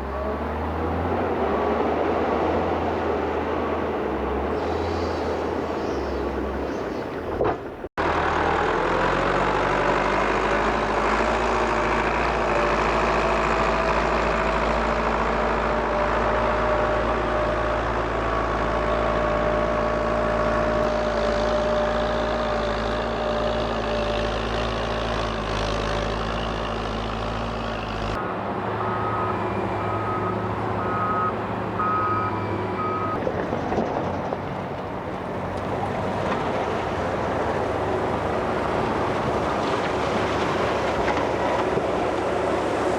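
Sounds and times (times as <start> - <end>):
diesel engine running: 0.0 - 42.9
reversing alarm beeps: 28.8 - 33.2.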